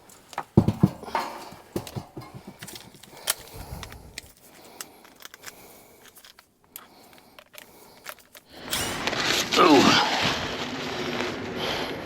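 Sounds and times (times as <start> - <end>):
light clicks and knocks of handling: 0.0 - 8.7.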